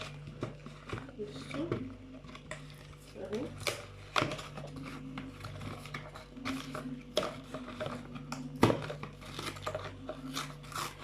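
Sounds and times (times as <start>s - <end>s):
plastic items knocking and clicking: 0.0s - 10.6s
steady low hum: 0.0s - 11.0s.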